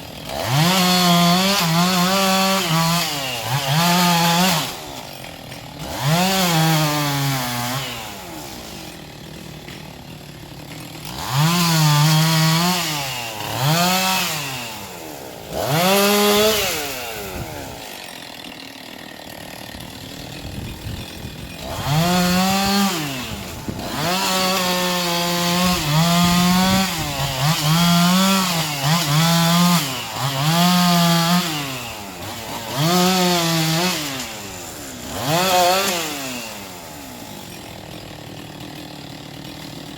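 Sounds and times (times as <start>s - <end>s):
chainsaw revving and idling: 0.0s - 39.9s.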